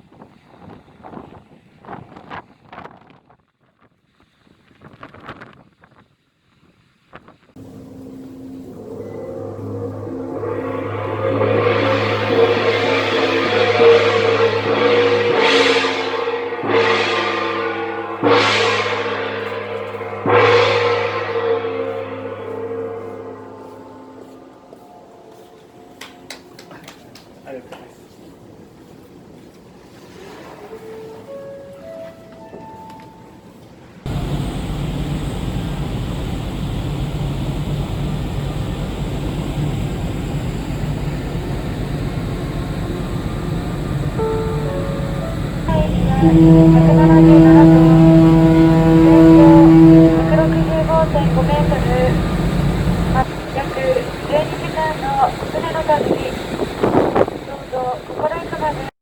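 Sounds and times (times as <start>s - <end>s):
large gong ringing: 7.6s - 26.6s, 31.2s - 58.9s
rushing noise: 7.6s - 26.6s, 34.1s - 58.9s
steady low tones: 7.6s - 27.0s, 34.0s - 58.9s
ferry engines droning: 7.6s - 58.9s.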